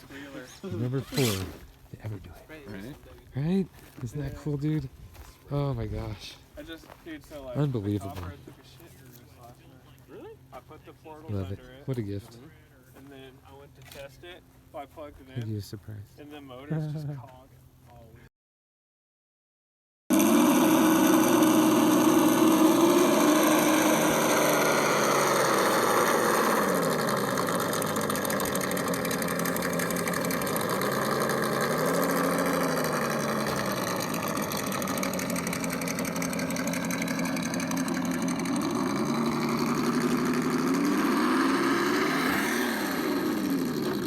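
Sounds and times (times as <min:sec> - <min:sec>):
engine pitch rising and falling: 0:00.7 - 0:01.6, 0:20.1 - 0:44.0.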